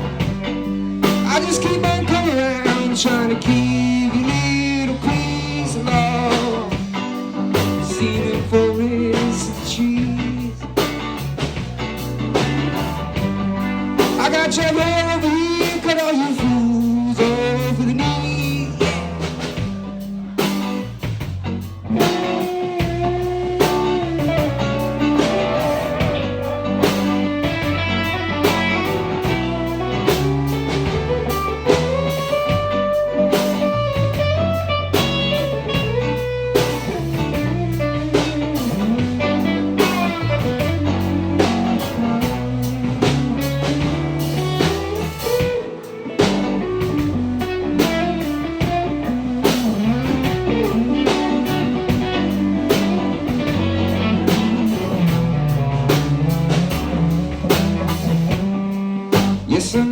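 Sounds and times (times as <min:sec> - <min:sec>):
bass notes: 0:00.0 - 0:59.9
drum kit: 0:00.0 - 0:59.9
lead guitar: 0:00.0 - 0:59.9.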